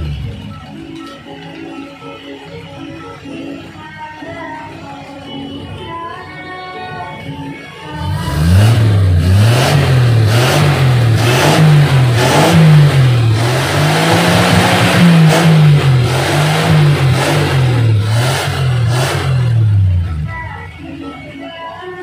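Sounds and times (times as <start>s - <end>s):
car engine revving: 0.0s - 0.7s, 7.9s - 20.4s.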